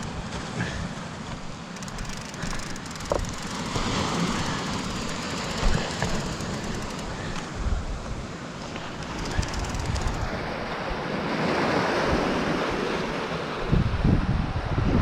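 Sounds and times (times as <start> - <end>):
sea surf: 0.0 - 15.0
wind buffeting microphone: 1.8 - 11.1, 13.7 - 15.0.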